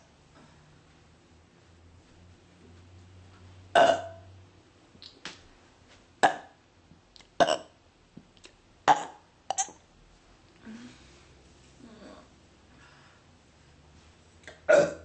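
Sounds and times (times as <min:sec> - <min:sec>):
woman burping: 0:03.8 - 0:04.2, 0:07.4 - 0:07.7, 0:08.9 - 0:09.8, 0:14.5 - 0:15.0.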